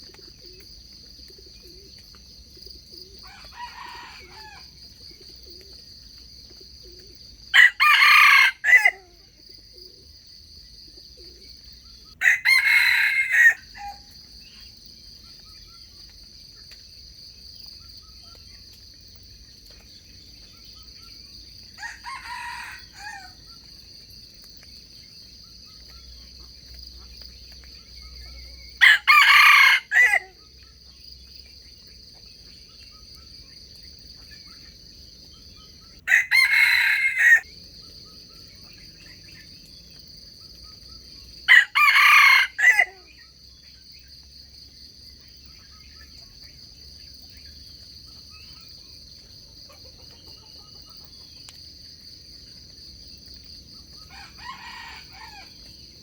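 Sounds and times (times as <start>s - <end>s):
roosters crowing: 3.2s - 4.8s, 7.6s - 9.2s, 12.2s - 14.2s, 21.8s - 23.4s, 28.8s - 30.4s, 36.0s - 37.5s, 41.5s - 43.1s, 54.1s - 55.7s.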